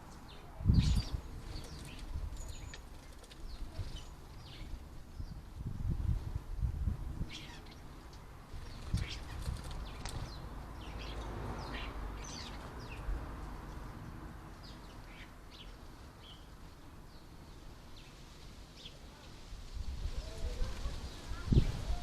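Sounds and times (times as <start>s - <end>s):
small birds chirping: 0.0s - 5.6s, 7.2s - 19.4s.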